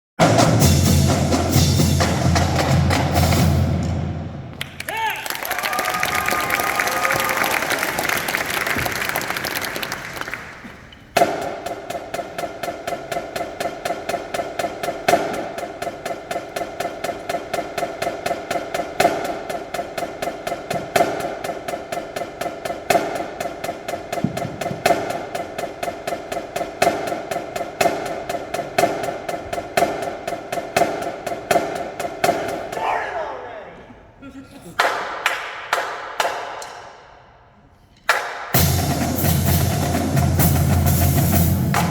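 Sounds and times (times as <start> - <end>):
marching drumline playing: 0.2 - 5.0, 5.6 - 33.6, 38.1 - 41.9
crowd applause: 4.6 - 10.9.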